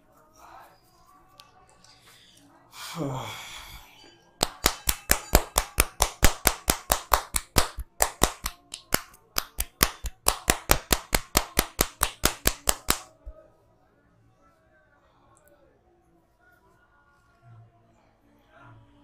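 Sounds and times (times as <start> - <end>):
hands slapping in percussive massage: 4.4 - 13.3.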